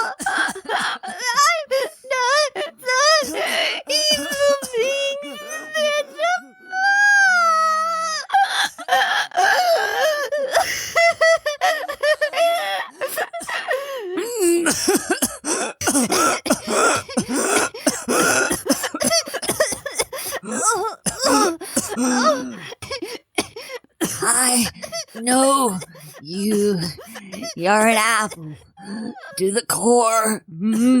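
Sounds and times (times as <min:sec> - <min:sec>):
high vocal cry: 0:01.2 - 0:10.0, 0:20.4 - 0:22.6, 0:24.1 - 0:31.0
person coughing harshly: 0:14.5 - 0:24.9, 0:25.6 - 0:27.6.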